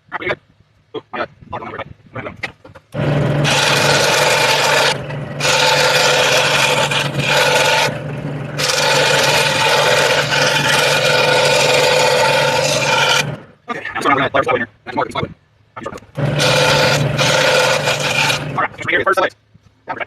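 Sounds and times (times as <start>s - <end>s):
saw blade rasping through wood: 3.0s - 13.5s, 16.2s - 18.9s
scroll saw motor hum: 3.0s - 13.5s, 16.1s - 18.9s.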